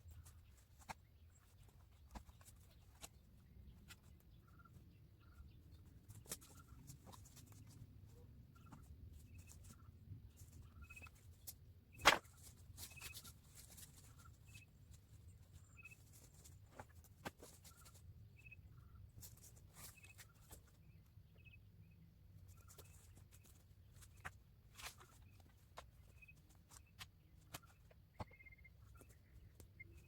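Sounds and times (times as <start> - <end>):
high bird chirps: 27.7 - 30.0.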